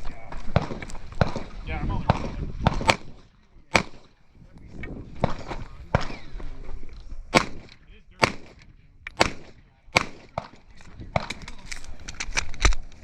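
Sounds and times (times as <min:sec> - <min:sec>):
airsoft pistol shots: 0:00.5 - 0:04.2, 0:07.3 - 0:11.4.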